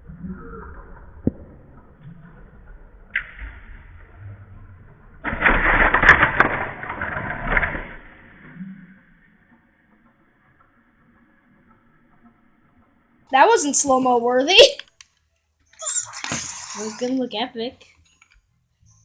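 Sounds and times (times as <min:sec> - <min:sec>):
plastic bricks clattering: 0:05.3 - 0:08.0.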